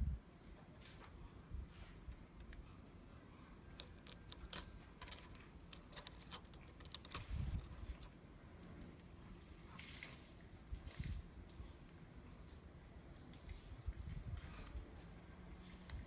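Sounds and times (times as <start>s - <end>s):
small metal objects clinking: 3.8s - 8.2s.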